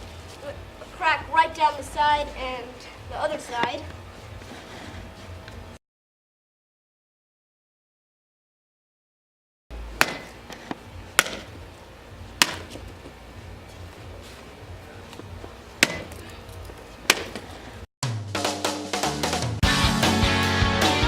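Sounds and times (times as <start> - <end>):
metal bat whacking watermelon: 10.0 - 10.4, 11.2 - 11.6, 12.4 - 12.8, 15.8 - 16.2, 17.1 - 17.5
rock music with guitar: 18.8 - 21.0.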